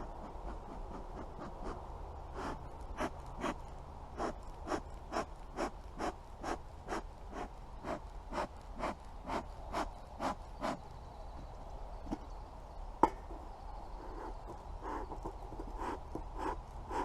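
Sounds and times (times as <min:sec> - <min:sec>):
bellows puffing air: 0:02.4 - 0:03.6.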